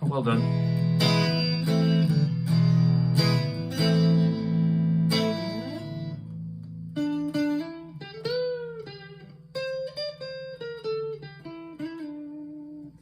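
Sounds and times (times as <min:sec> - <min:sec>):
clean electric guitar: 0:00.0 - 0:13.0.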